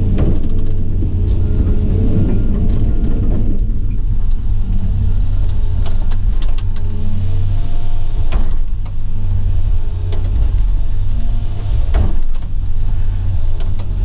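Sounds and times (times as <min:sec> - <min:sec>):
machine knocks and clanks: 0:00.0 - 0:07.0, 0:08.2 - 0:14.0
excavator diesel engine running: 0:00.0 - 0:14.0.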